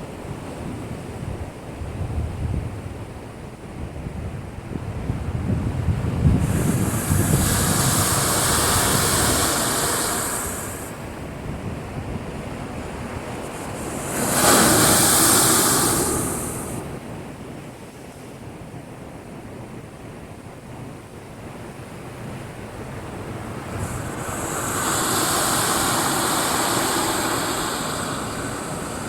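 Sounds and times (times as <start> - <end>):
waves crashing: 6.2 - 11.4, 12.0 - 17.3, 21.9 - 29.0.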